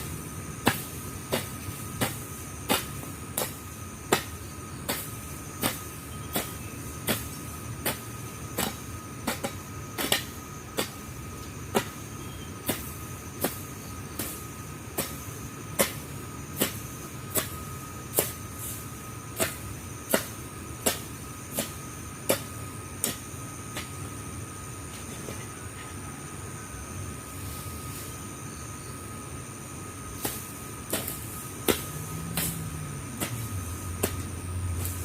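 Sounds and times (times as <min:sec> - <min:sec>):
hand tool chopping into ground: 0:00.0 - 0:11.1, 0:11.7 - 0:12.0, 0:12.6 - 0:18.4, 0:19.3 - 0:24.0, 0:30.2 - 0:35.0.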